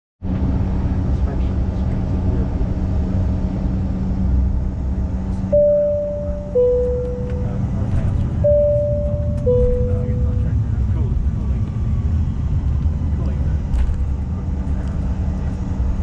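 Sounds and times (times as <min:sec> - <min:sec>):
airliner cabin drone: 0:00.3 - 0:16.0
two-tone cabin chime: 0:05.5 - 0:10.6.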